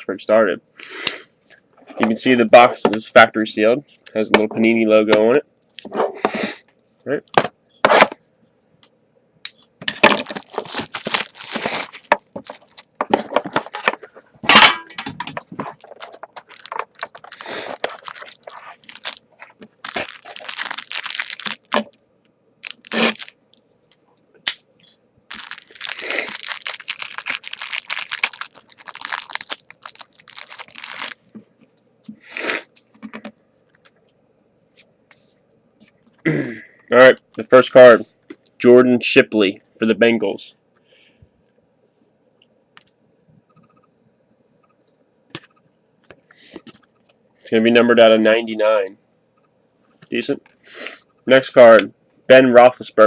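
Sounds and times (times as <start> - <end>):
packaging crinkling: 9.8 - 14.0, 15.4 - 22.0, 22.6 - 23.6, 25.3 - 31.4
plastic wrap tearing: 9.9 - 12.8, 15.6 - 22.0, 22.6 - 23.4, 25.3 - 31.3.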